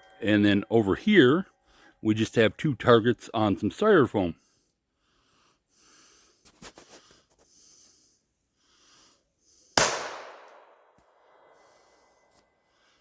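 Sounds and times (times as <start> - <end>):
loud gunshot with echo: 9.8 - 10.8.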